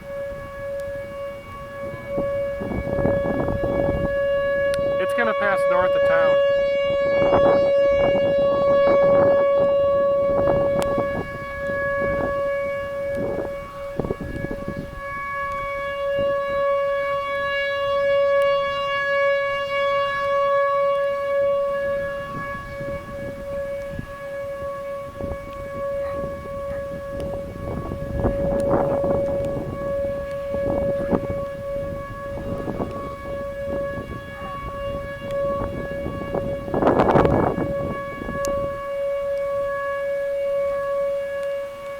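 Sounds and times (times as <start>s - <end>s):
bursts of low noise: 0.0s - 18.8s
tornado warning siren: 0.0s - 41.9s.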